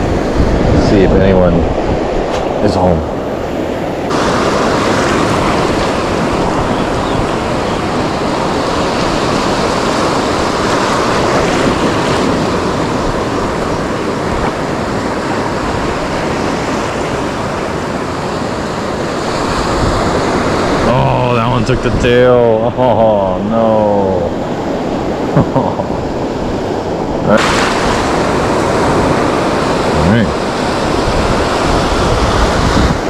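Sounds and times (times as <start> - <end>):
wind on microphone: 0.0 - 23.0, 24.2 - 33.0
ocean surf rushing: 0.0 - 33.0.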